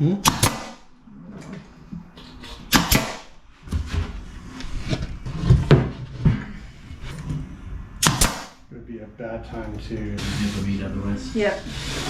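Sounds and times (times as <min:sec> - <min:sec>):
sharp wooden cracks: 0:08.0 - 0:08.6.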